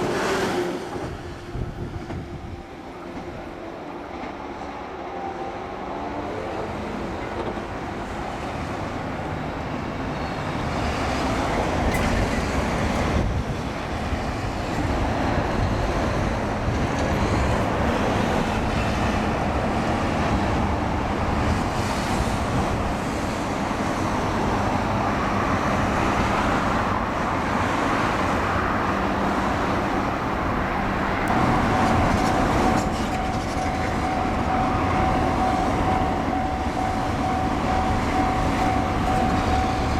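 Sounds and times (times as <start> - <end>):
train rumbling past: 0.0 - 39.9
steady high tone: 30.0 - 39.9.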